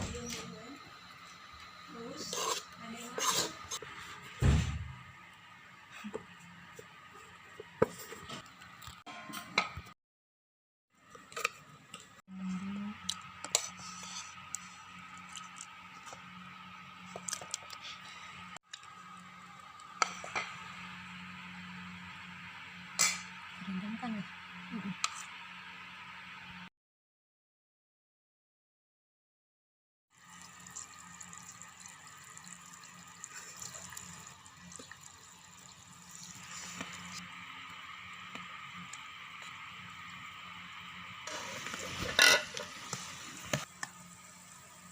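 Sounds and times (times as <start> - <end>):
water trickling and splashing: 30.2 - 37.1.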